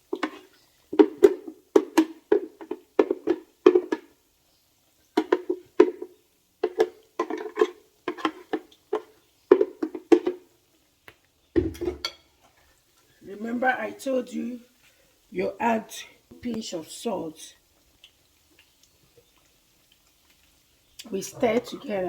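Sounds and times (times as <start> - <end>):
batter beaten in a bowl: 0.1 - 4.2, 5.2 - 10.4.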